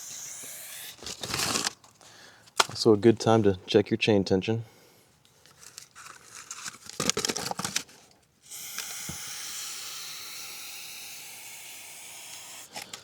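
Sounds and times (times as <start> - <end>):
aerosol can spraying: 0.0 - 1.0, 8.5 - 12.9.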